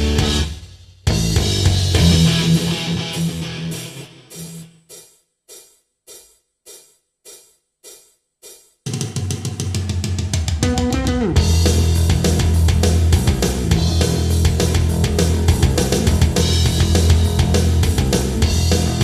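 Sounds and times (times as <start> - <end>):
rock band over loudspeakers: 0.0 - 4.6, 9.2 - 19.0.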